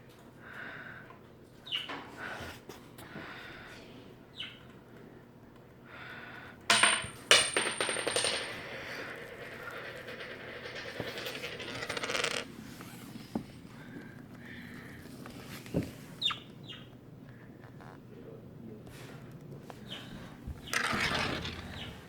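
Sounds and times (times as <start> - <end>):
metal ring clinking on hard surface: 6.7 - 12.5
metal ring rattling and spinning: 6.7 - 12.5, 20.6 - 22.0.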